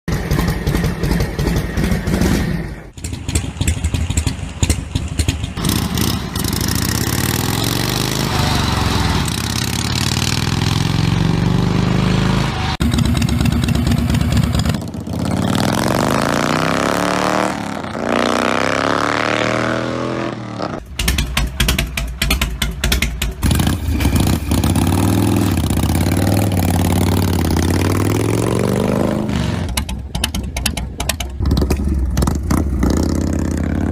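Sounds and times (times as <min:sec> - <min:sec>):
motorcycle engines idling and revving: 0:00.1 - 0:33.9.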